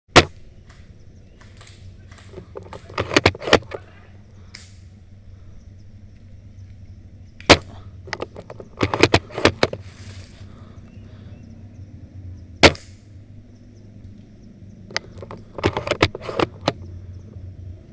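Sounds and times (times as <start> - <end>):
steady low hum: 0.1 - 17.9
airsoft guns firing: 12.6 - 13.1.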